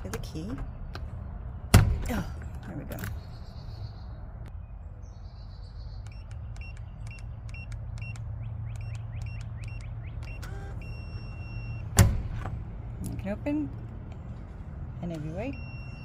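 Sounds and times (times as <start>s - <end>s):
keypad lock beeps: 6.1s - 11.9s, 15.6s - 16.0s.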